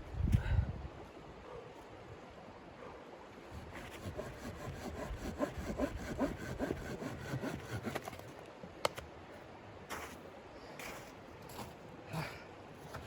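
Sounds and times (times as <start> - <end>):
saw cutting wood: 3.5 - 8.2.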